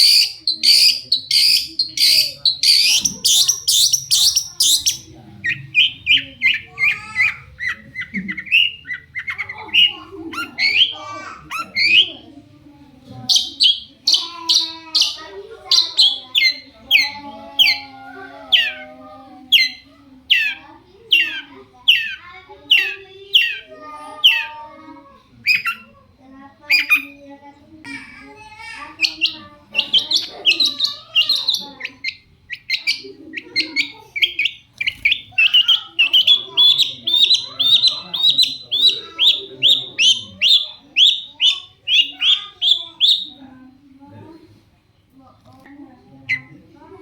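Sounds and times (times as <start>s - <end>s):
shrike giving harsh scratchy calls: 0.0s - 7.7s, 33.6s - 43.4s.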